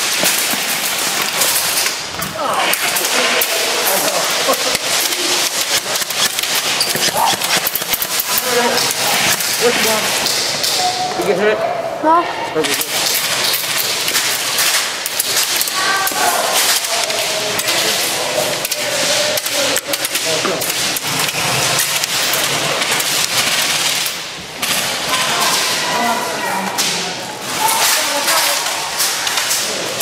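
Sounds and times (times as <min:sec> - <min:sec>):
pellets cracking against wood: 0:00.0 - 0:11.3, 0:12.6 - 0:26.0
people shouting: 0:06.9 - 0:08.9, 0:15.6 - 0:19.8, 0:24.9 - 0:28.9.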